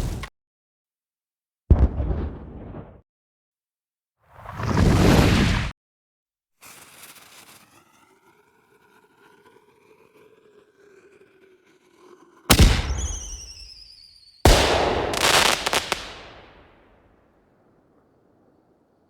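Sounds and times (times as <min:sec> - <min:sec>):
explosion bangs: 0:01.7 - 0:03.0, 0:12.5 - 0:13.6, 0:14.5 - 0:16.8
crackle: 0:12.5 - 0:18.8.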